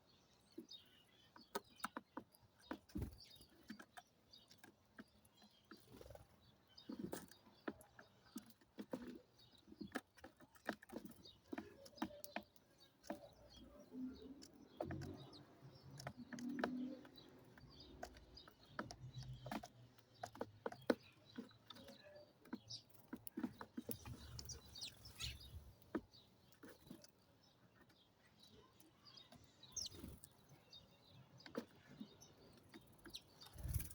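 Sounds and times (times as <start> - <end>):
faint bird chirps: 23.8 - 25.8.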